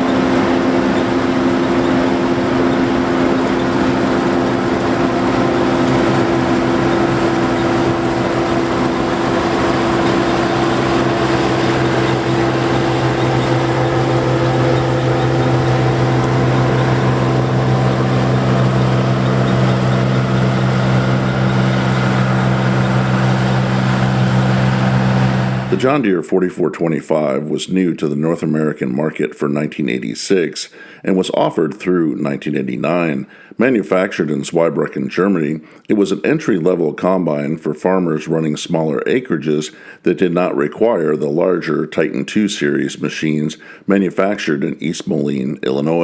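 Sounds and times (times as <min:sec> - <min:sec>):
combine harvester drone: 0:00.0 - 0:26.0
deeper hum: 0:00.0 - 0:26.0.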